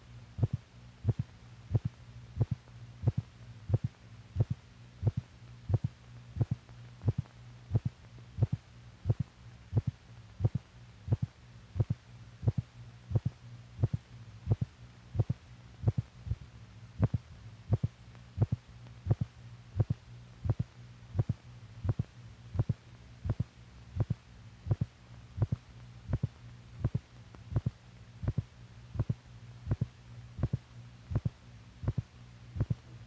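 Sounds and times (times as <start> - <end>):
low electrical hum: 0.0 - 33.0
amplified heartbeat thuds: 0.4 - 16.4, 17.0 - 20.6, 21.2 - 22.0.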